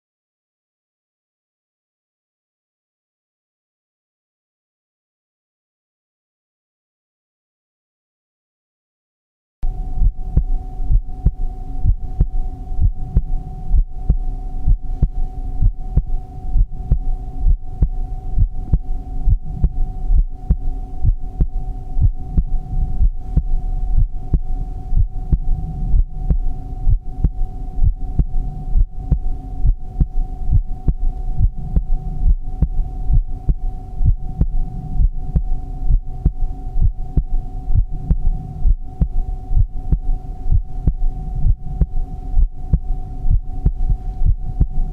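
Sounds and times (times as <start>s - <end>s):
constant hum: 9.6s - 44.9s
heartbeat thumps: 9.6s - 44.9s.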